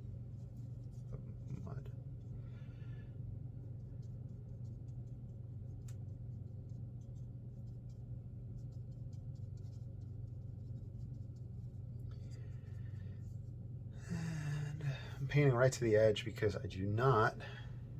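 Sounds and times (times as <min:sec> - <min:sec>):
steady low hum: 0:00.0 - 0:17.9
brush strokes on paper: 0:03.6 - 0:13.6.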